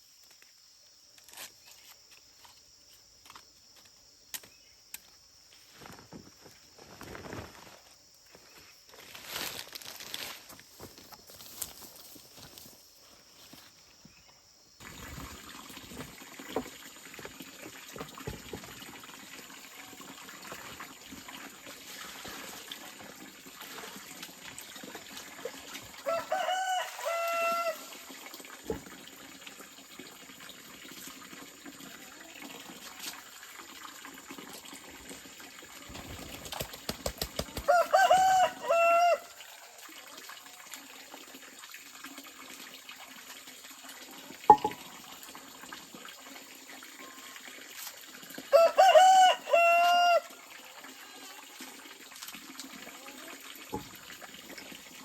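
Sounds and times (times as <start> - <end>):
rooster crowing: 26.0 - 28.0, 37.6 - 39.4, 48.5 - 50.4.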